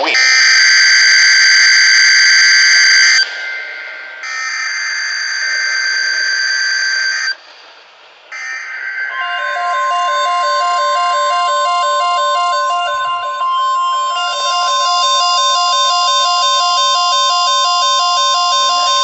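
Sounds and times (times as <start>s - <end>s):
steady alert tone: 9.1s - 17.7s
harsh digital data bursts: 10.8s - 19.0s.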